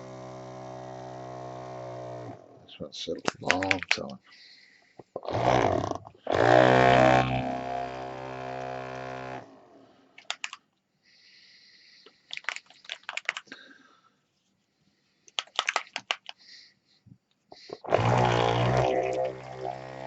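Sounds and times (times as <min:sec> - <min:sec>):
vortex mixer buzzing hum: 0:00.0 - 0:02.7, 0:05.3 - 0:09.8, 0:17.8 - 0:20.0
sharp clicks and light rattles: 0:03.2 - 0:04.2, 0:10.2 - 0:10.8, 0:12.0 - 0:13.6, 0:15.3 - 0:16.4.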